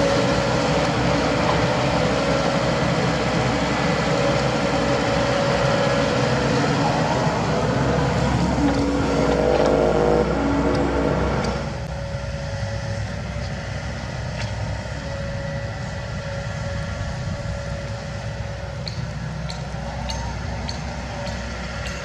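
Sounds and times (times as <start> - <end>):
excavator engine and hydraulics: 0.0 - 22.0.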